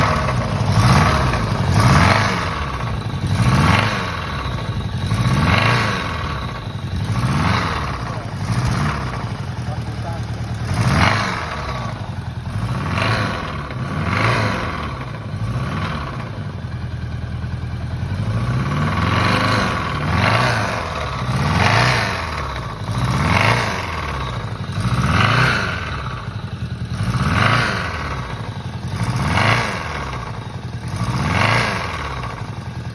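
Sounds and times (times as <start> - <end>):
motorcycle engine revving: 0.0 - 32.9.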